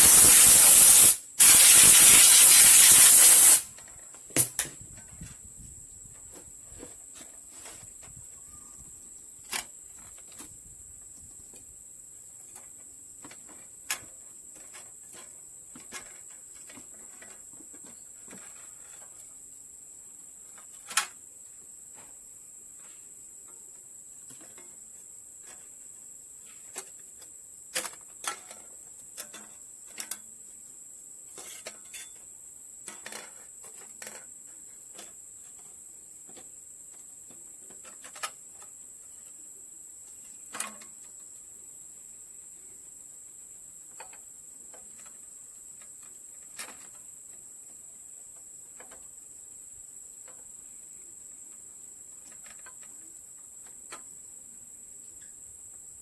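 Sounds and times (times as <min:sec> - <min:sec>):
steady high-pitched hiss: 0:00.0 - 0:56.0.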